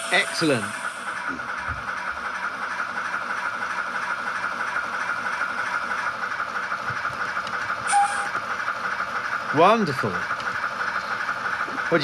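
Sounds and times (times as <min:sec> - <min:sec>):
steam engine hissing: 0:00.0 - 0:02.4.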